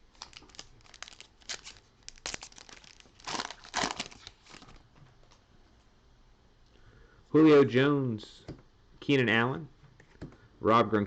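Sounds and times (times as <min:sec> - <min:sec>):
foil wrapper crinkling and tearing: 0:00.1 - 0:04.8.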